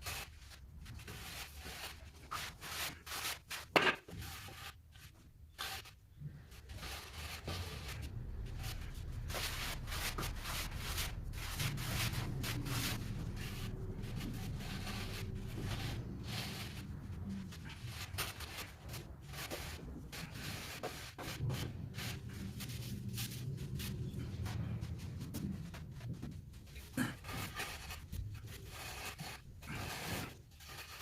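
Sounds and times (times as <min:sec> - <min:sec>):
trowel scraping mortar: 0:27.0 - 0:31.0.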